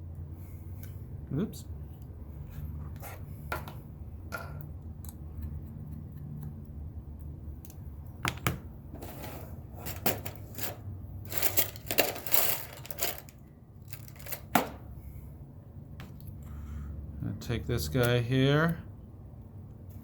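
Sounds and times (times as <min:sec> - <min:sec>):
steady low hum: 0:00.0 - 0:20.0
small tools clicking and rattling: 0:09.9 - 0:14.5.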